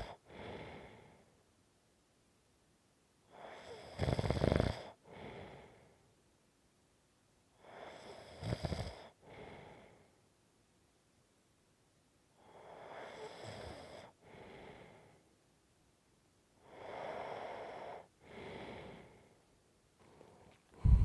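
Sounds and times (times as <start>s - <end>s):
faint short breath: 20.0s - 21.0s
person snoring: 20.8s - 21.0s.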